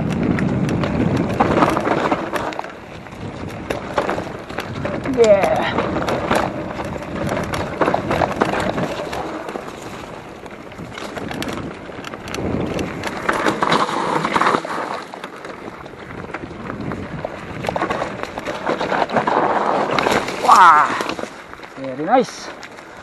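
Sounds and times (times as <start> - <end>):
bike knocking and rattling: 0.0 - 23.0
bike tyres on dirt: 0.0 - 23.0.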